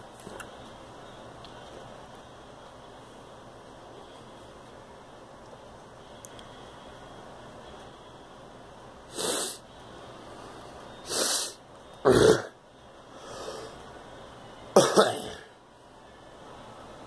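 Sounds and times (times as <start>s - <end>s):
girl coughing: 14.8s - 15.5s.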